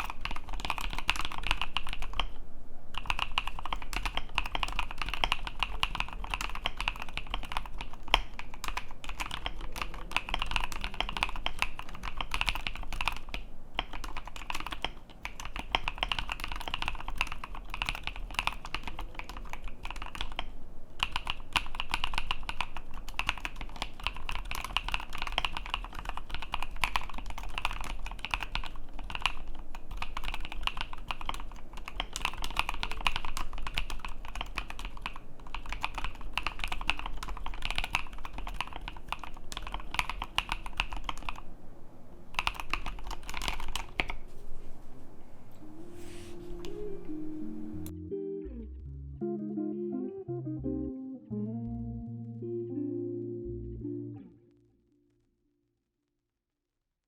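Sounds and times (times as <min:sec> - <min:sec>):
fast typing on mechanical keyboard: 0:00.0 - 0:41.5, 0:42.3 - 0:44.2.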